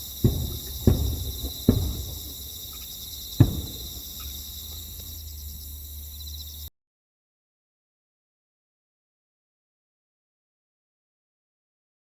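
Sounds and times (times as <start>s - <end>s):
fireworks bursting with deep booms: 0.0s - 5.5s
crickets chirring: 0.0s - 6.7s.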